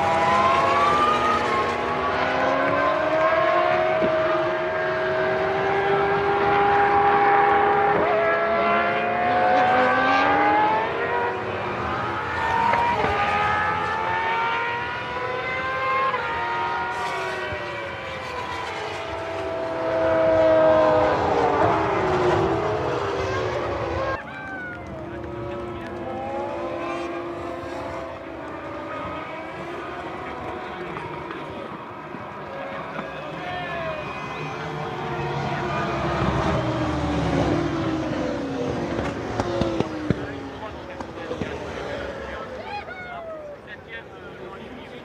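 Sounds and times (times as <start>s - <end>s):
racing car engines screaming: 0.0s - 45.0s.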